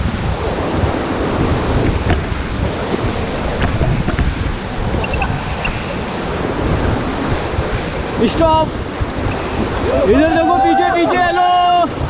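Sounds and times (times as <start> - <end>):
paddle splashes: 0.0 - 12.0
rushing whitewater: 0.0 - 12.0
wind buffeting microphone: 0.0 - 12.0.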